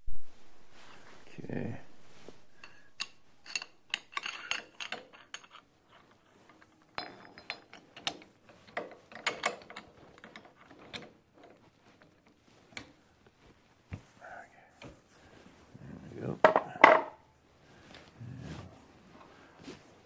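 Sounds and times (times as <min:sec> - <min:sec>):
metallic clicks and clanks at lathe: 0:02.6 - 0:05.7, 0:06.5 - 0:12.2.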